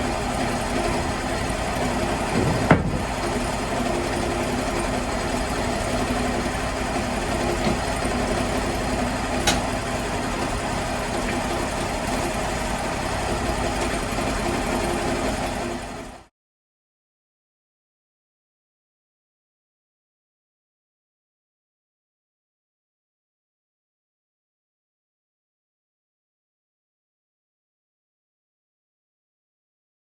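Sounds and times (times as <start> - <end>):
sawmill engine running: 0.0 - 16.3.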